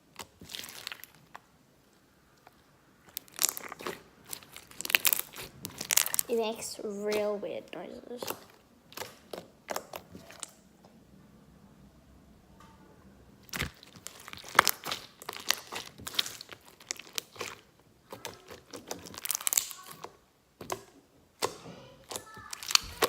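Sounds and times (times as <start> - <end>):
slime squished by hand: 0.0 - 1.5, 2.4 - 7.4, 8.2 - 10.6, 13.4 - 23.0.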